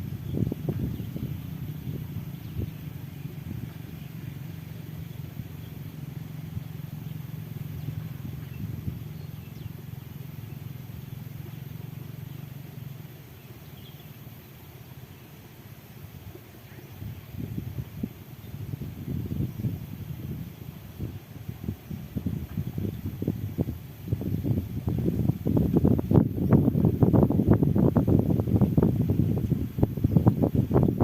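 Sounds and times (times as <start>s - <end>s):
low vehicle engine running: 0.0s - 31.0s
faint bird chirps: 6.7s - 15.4s.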